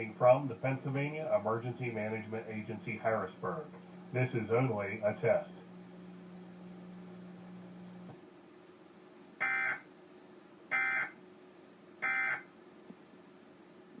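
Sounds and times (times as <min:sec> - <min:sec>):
digital data tone bursts: 0:09.4 - 0:09.8, 0:10.7 - 0:11.1, 0:12.0 - 0:12.4.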